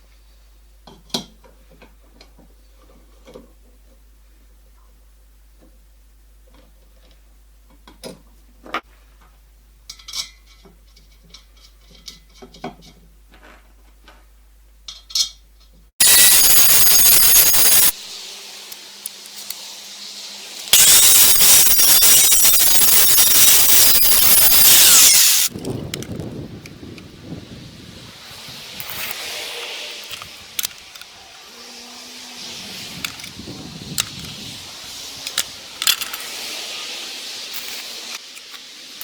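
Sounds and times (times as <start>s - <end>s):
power grinder grinding steel: 16.0s - 18.0s, 20.7s - 25.5s.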